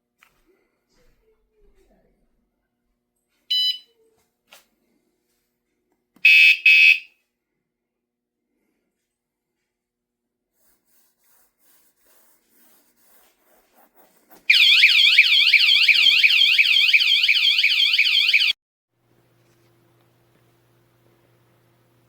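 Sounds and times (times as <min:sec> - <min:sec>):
motorcycle alarm siren warbling: 0:14.5 - 0:18.6.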